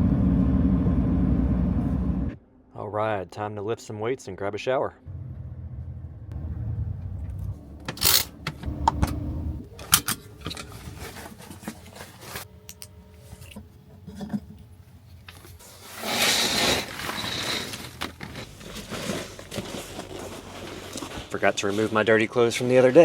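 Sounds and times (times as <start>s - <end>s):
objects being rummaged: 9.7s - 23.0s.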